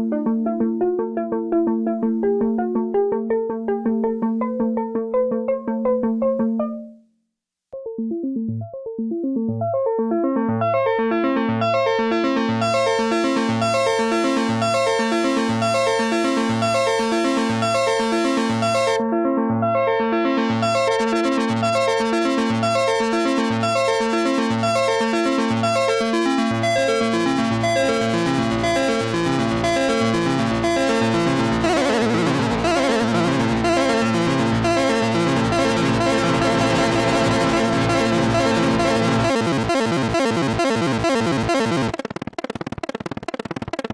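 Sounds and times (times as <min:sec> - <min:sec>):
synthesizer arpeggio: 0:12.6 - 0:19.0, 0:20.6 - 0:43.9
pulsing low synth note: 0:13.6 - 0:19.0, 0:20.6 - 0:43.9.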